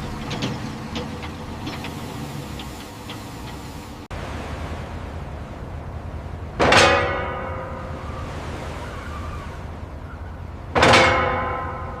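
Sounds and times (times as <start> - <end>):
loud ringing struck hits: 6.6 - 8.0.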